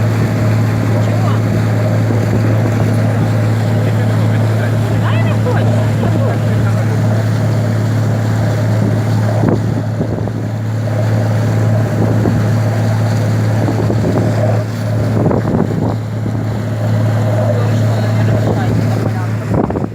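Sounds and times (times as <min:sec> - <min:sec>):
motorboat engine running: 0:00.0 - 0:19.9
wind buffeting microphone: 0:00.0 - 0:19.9.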